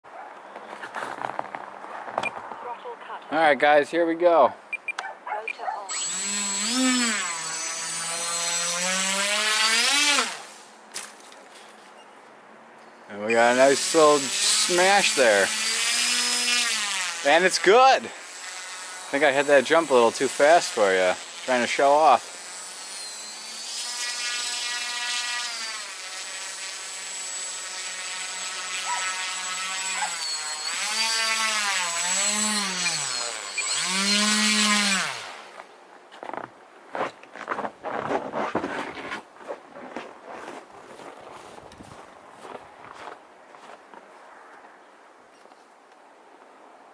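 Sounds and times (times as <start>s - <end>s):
small electric motor whining: 5.5s - 10.4s, 12.8s - 35.5s.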